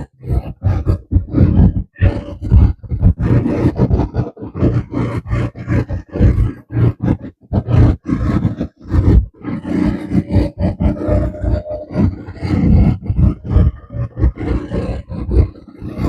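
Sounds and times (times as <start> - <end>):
wind buffeting microphone: 0.0 - 16.0
atv engine humming: 9.6 - 16.0.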